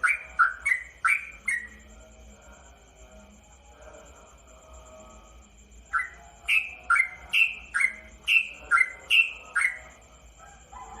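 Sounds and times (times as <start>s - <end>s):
bird singing whistled notes: 0.0s - 1.8s, 5.9s - 10.0s.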